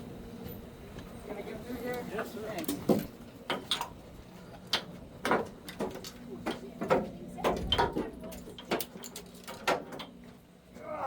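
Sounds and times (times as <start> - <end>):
knocks and clattering on boat deck: 4.7 - 10.2.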